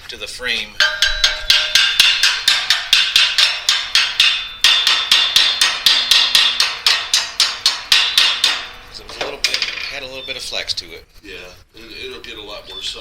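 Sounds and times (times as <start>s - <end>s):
hammer blows on steel: 0.8s - 10.1s.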